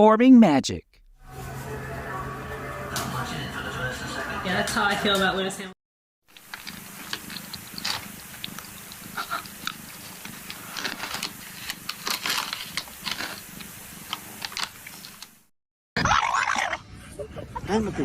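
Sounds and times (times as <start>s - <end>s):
steady low hum: 1.0s - 5.7s.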